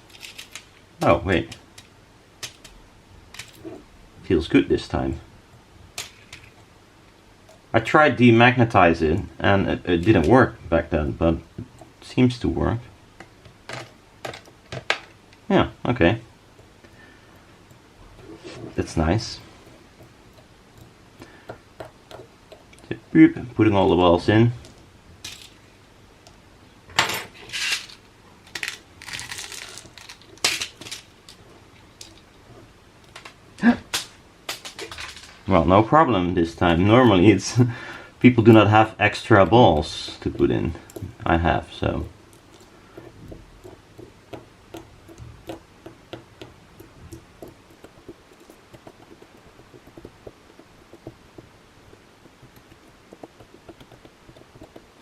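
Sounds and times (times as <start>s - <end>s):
steel balls clinking and rattling: 0.0s - 2.7s, 25.2s - 25.6s, 27.0s - 32.4s, 33.1s - 35.5s.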